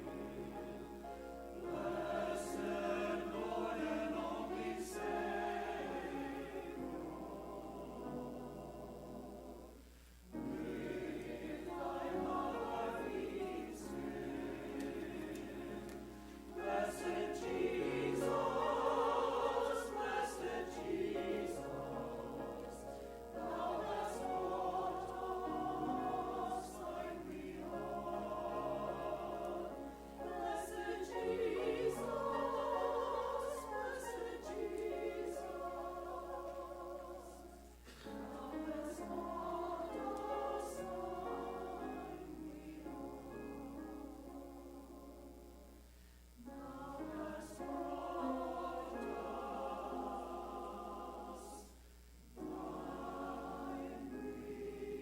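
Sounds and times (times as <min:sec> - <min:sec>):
choir singing a hymn: 0:00.0 - 0:45.6, 0:46.4 - 0:55.0.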